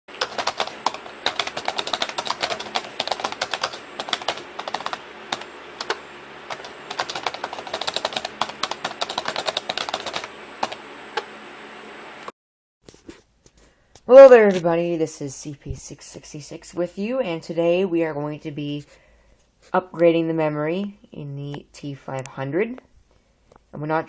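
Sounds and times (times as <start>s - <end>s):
fast keyboard typing: 0.1s - 11.3s.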